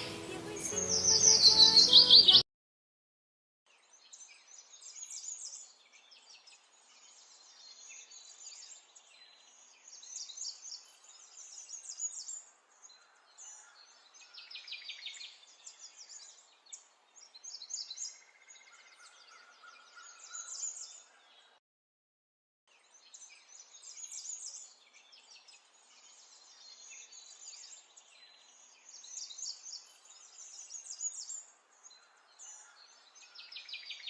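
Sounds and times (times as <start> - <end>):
faint hiss: 0.0 - 2.4
songbirds chirping and singing: 0.0 - 2.4, 22.9 - 34.0.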